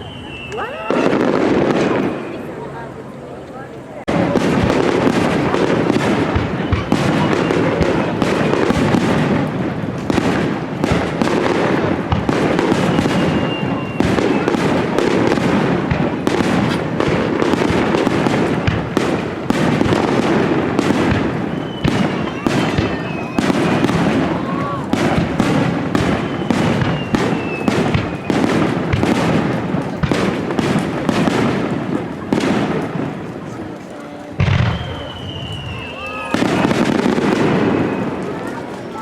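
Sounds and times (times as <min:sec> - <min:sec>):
thin firework whistle: 0:00.0 - 0:02.7, 0:06.4 - 0:08.9, 0:12.6 - 0:14.8, 0:21.3 - 0:25.1, 0:26.0 - 0:28.6, 0:34.4 - 0:38.4
fireworks bangs and crackles: 0:00.0 - 0:39.0.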